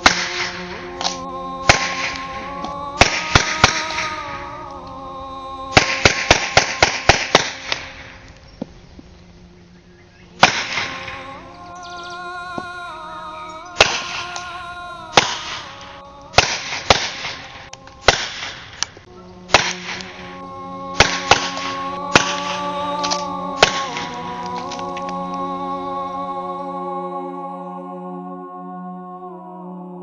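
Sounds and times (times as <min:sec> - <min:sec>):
background music with held tones: 0:00.0 - 0:30.0
suppressed pistol shots: 0:18.0 - 0:18.8, 0:19.6 - 0:20.0.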